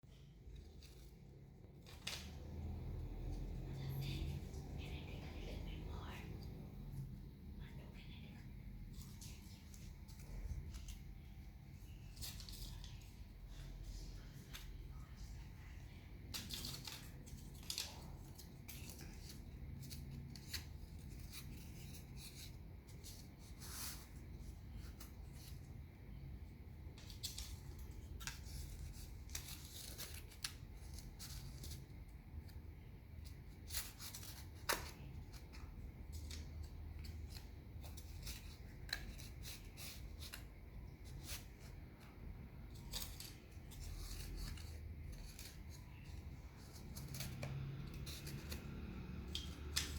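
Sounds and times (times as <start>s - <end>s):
low steady hum: 0.0s - 49.9s
wooden sticks clicking and scraping: 16.1s - 49.9s.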